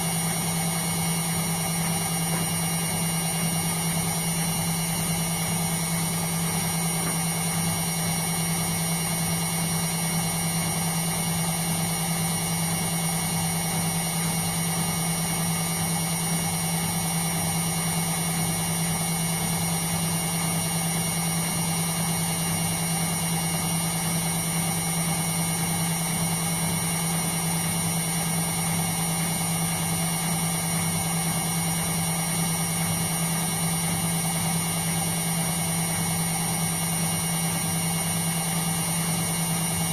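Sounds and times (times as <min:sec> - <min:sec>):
washing machine motor hum: 0:00.0 - 0:39.9.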